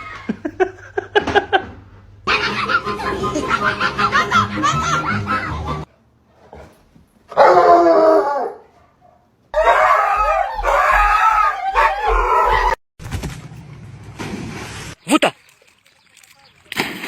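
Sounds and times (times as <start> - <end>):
dog howling: 7.3 - 8.7, 9.6 - 12.8.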